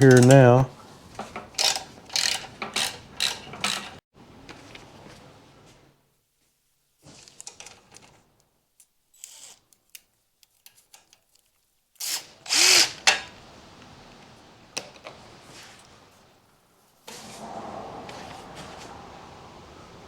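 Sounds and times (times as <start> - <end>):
hand tools clicking on metal: 0.0 - 0.6, 1.2 - 4.0
power tool burst: 12.0 - 13.2.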